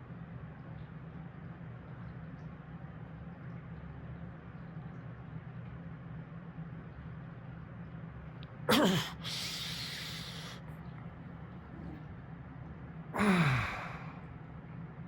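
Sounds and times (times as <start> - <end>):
long breathy exhale: 8.7 - 10.6, 13.2 - 14.2
man's vocal outbursts: 8.7 - 10.6, 13.2 - 14.1.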